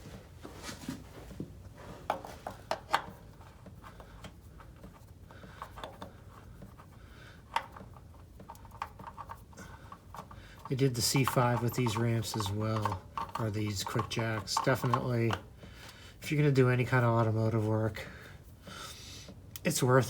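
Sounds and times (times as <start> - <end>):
hand tools clicking and tapping: 2.0 - 16.0.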